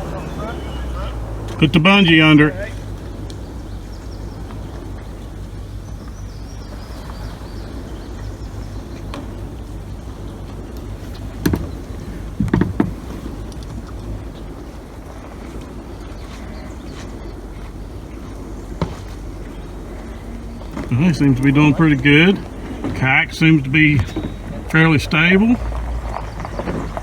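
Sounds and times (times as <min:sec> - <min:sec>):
knocks on plastic kayak: 0:11.4 - 0:11.8, 0:12.4 - 0:13.2.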